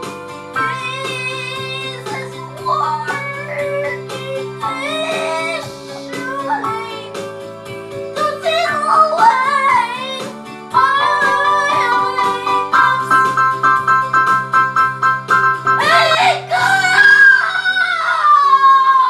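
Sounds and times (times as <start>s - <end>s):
piano chords: 0.0s - 18.2s
child singing: 0.6s - 7.2s, 8.2s - 13.4s, 15.8s - 18.5s.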